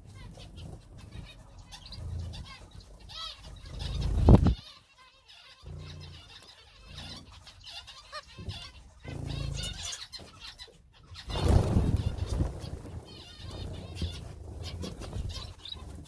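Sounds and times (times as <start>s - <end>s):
birds fluttering wings: 0.0s - 4.6s, 11.2s - 16.0s
cage birds chirping: 0.0s - 16.0s.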